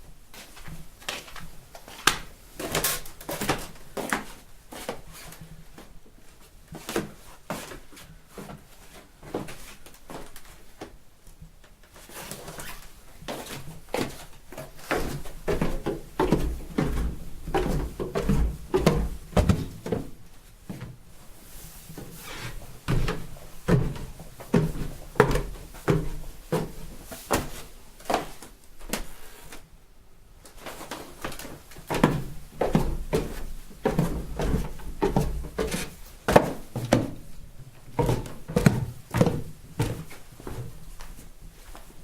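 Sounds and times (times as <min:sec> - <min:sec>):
footsteps in soft slippers: 0:11.9 - 0:29.6, 0:30.5 - 0:42.0.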